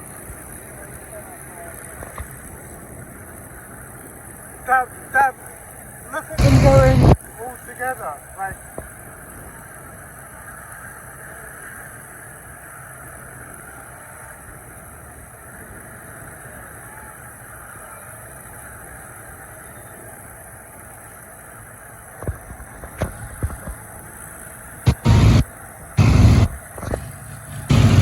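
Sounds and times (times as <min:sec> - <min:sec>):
distant aircraft engines running: 0:00.0 - 0:28.0
sharp loud thumps: 0:06.4 - 0:07.2, 0:24.9 - 0:25.4, 0:26.0 - 0:28.0.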